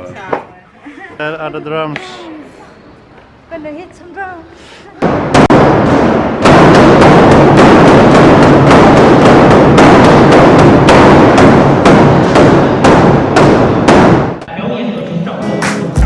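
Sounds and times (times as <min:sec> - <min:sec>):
heavy drum strikes: 0:05.0 - 0:14.4.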